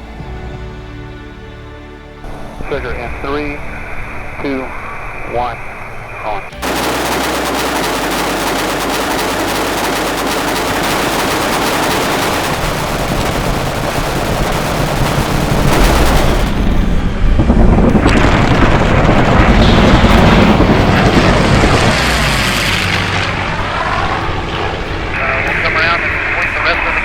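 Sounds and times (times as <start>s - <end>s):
propeller plane engine passing: 2.3s - 27.0s
machine-gun fire: 6.6s - 17.0s, 18.0s - 23.1s.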